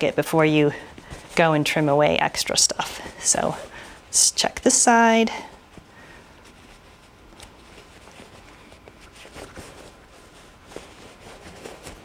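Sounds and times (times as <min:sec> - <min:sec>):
cloth rustling: 0:00.0 - 0:12.0.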